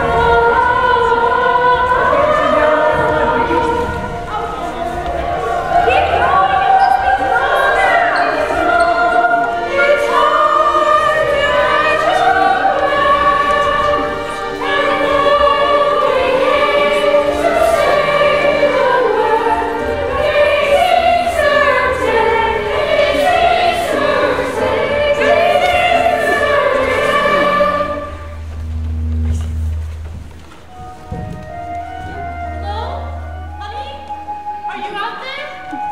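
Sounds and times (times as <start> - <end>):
chorus of young voices singing: 0.0 - 28.4.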